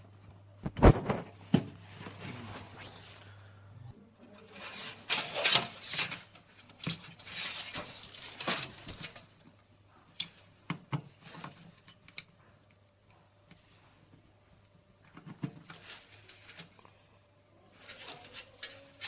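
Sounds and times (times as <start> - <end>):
hands rustling computer parts: 4.2 - 13.7, 15.0 - 16.8, 17.7 - 19.0.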